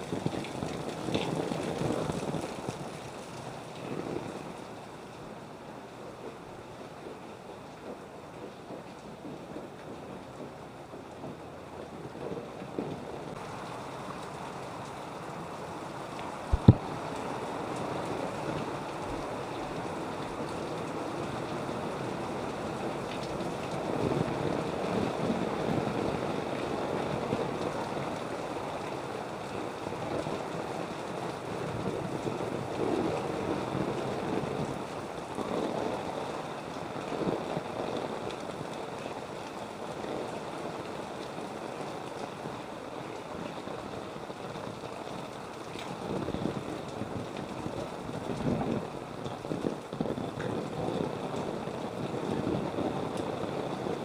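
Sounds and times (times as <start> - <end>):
wading through flood water: 0.0 - 54.0.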